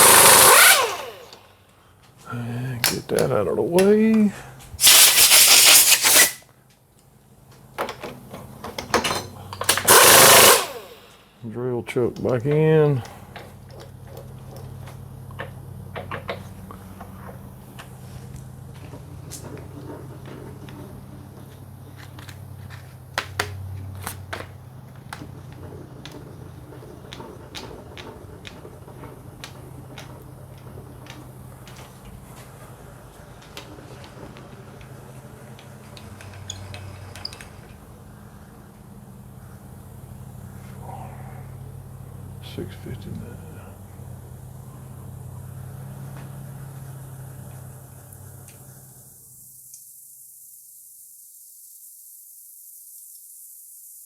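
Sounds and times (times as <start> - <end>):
compressed air blasts: 0.0 - 1.4, 4.8 - 6.4, 9.8 - 11.2
milling machine humming: 0.0 - 1.4, 9.8 - 11.0
sharp clicks and taps: 23.2 - 31.9.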